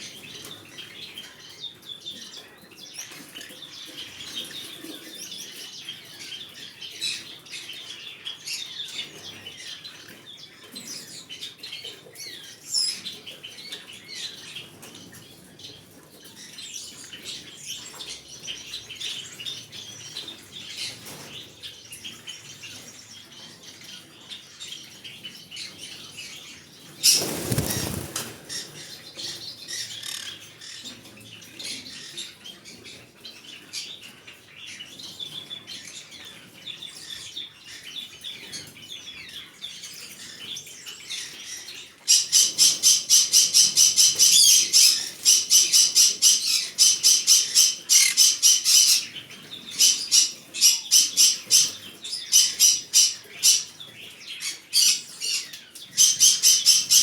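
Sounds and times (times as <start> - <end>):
parrot chirping and chattering: 42.1 - 49.1.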